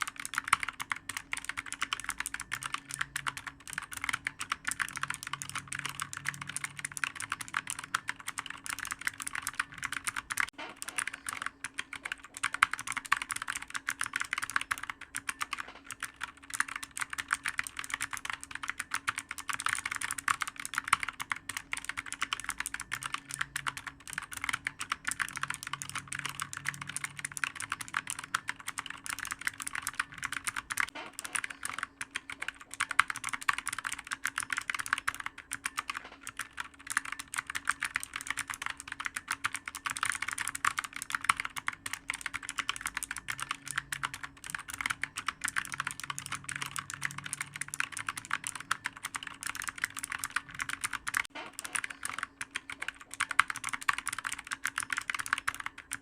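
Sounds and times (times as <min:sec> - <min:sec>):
faint steady hum: 0:00.0 - 0:56.0
fast typing on clicky keyboard: 0:00.0 - 0:56.0.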